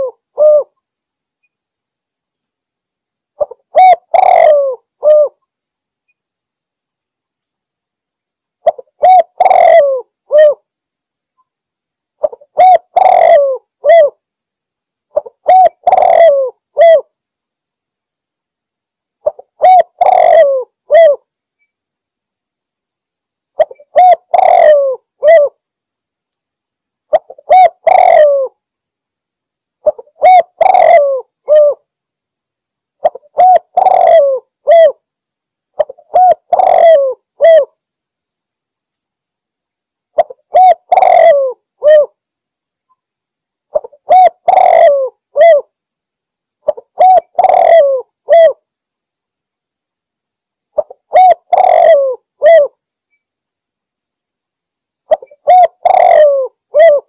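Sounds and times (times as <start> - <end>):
dove cooing: 0.0 - 0.8, 3.4 - 5.4, 8.6 - 10.6, 12.2 - 14.2, 15.1 - 17.1, 19.2 - 21.2, 23.6 - 25.6, 27.1 - 28.6, 29.8 - 31.8, 33.0 - 35.0, 35.8 - 37.8, 40.2 - 42.2, 43.7 - 45.7, 46.7 - 48.6, 50.8 - 52.8, 55.1 - 57.0.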